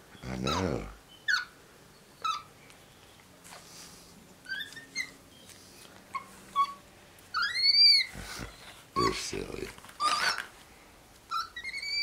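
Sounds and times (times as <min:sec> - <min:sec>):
monkey chirping: 0:00.5 - 0:01.5, 0:02.2 - 0:02.5, 0:04.5 - 0:05.2, 0:07.4 - 0:08.1, 0:10.0 - 0:10.4, 0:11.3 - 0:12.0.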